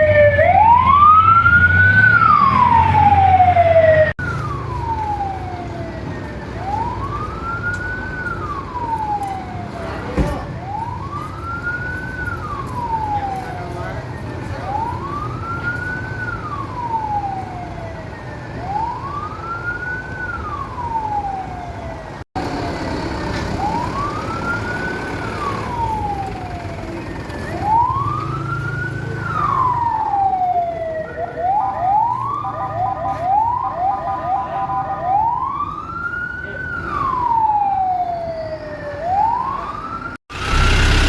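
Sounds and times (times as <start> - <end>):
fire engine siren wailing: 0.0 - 41.0
siren quick rising whoops: 27.6 - 36.0.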